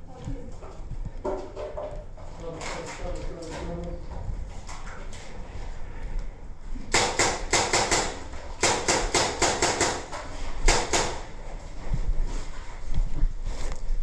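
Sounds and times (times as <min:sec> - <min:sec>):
airsoft gun rapid shots: 0:06.9 - 0:10.1, 0:10.7 - 0:11.3.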